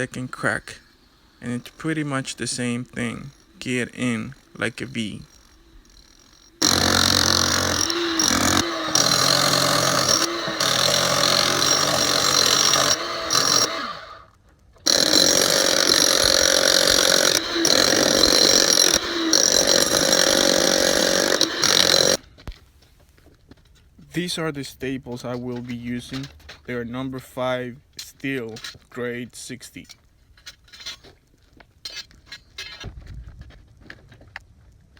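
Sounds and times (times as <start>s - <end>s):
rotary hammer chiselling: 0.0s - 22.3s.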